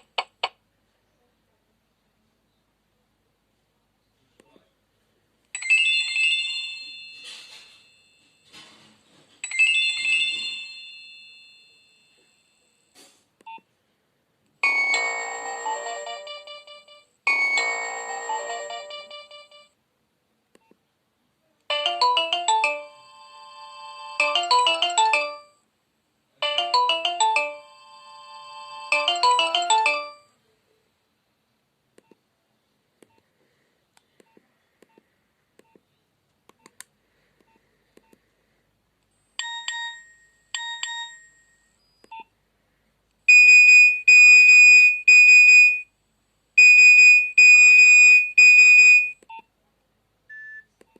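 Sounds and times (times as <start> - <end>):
short electronic phone melody: 14.6 - 19.7, 21.7 - 25.6, 26.4 - 30.3
high-pitched beep pattern: 28.9 - 30.3.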